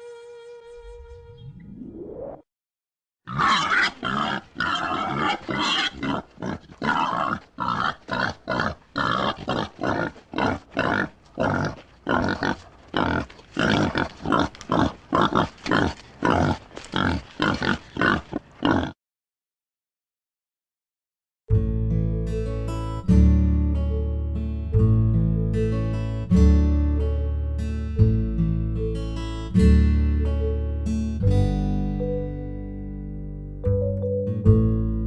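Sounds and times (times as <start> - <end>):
wild boar grunting: 3.3 - 19.0.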